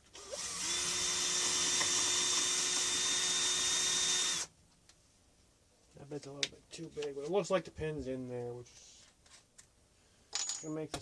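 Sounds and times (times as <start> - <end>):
electric drill running: 0.1 - 4.5.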